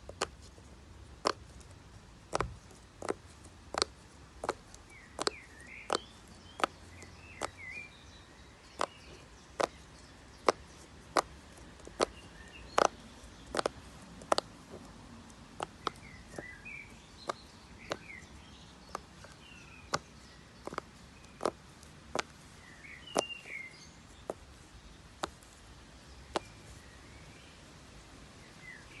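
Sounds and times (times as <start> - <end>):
bird chirps: 4.8 - 10.9, 11.8 - 13.7, 15.6 - 25.3, 28.4 - 29.0.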